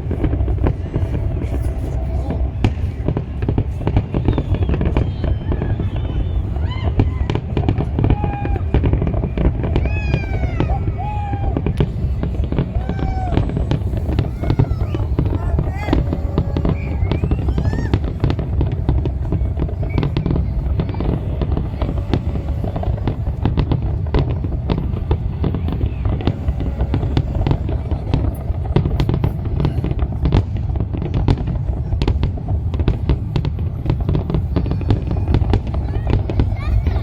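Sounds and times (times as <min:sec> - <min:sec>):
deep rumble: 0:00.0 - 0:37.0
fireworks bangs and crackles: 0:00.0 - 0:37.0
rising whistles: 0:03.8 - 0:07.4, 0:12.7 - 0:23.7.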